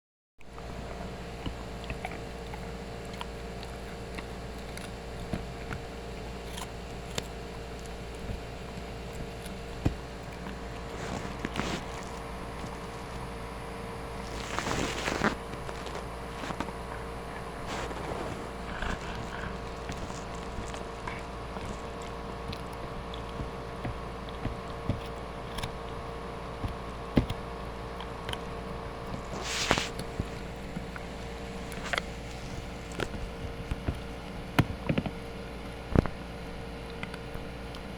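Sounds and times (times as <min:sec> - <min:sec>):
low background hum: 0:00.4 - 0:37.9
dog gnawing on a chew: 0:00.5 - 0:37.9.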